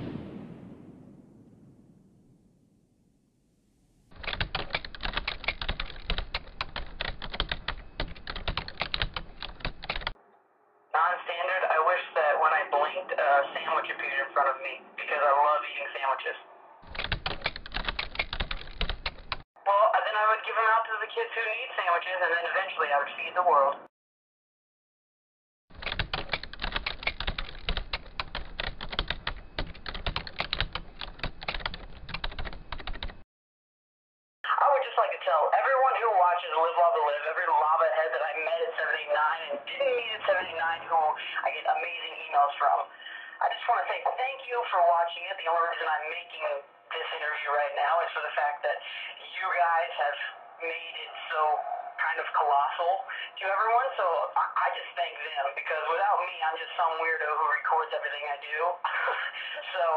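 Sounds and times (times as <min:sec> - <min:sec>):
rapid keyboard typing: 0:04.2 - 0:10.2, 0:16.9 - 0:19.4, 0:25.7 - 0:33.2.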